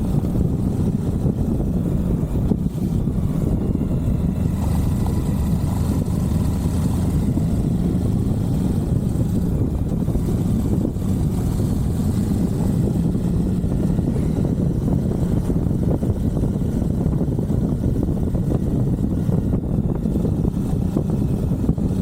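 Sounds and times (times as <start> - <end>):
motorcycle engine running: 0.0 - 22.0.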